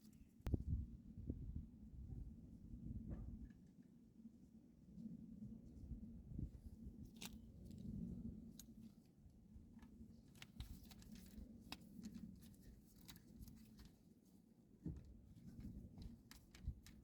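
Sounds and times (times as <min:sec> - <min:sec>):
tools and metal parts clicking: 0:16.1 - 0:17.0.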